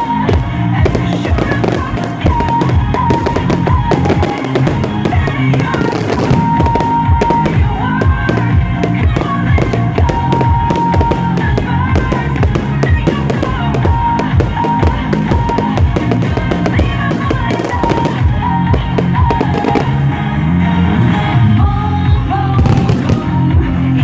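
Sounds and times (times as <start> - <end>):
fireworks bangs and crackles: 0.0 - 20.2, 22.5 - 23.8
loud music: 0.0 - 24.0.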